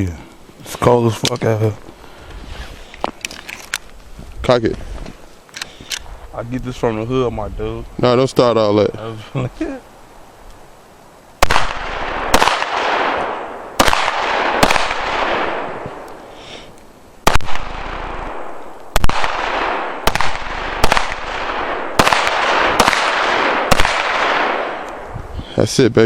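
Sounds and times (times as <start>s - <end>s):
handgun shots echoing: 11.4s - 16.1s.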